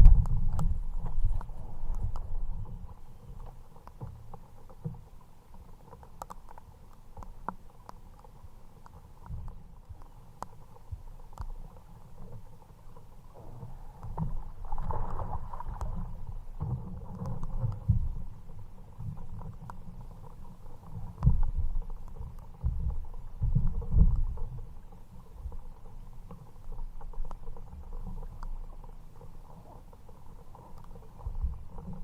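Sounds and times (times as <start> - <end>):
low rumble: 0.0 - 2.8
light ticks: 0.0 - 32.0.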